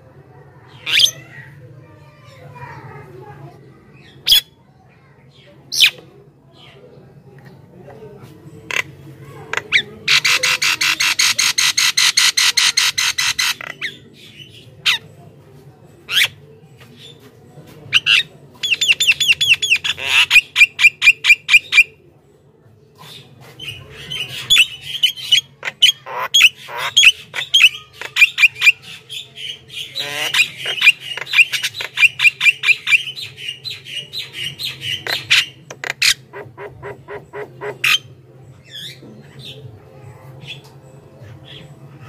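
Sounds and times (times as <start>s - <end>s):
myna bird singing: 0.6s - 1.6s, 8.7s - 15.1s, 17.9s - 22.0s, 23.0s - 42.0s.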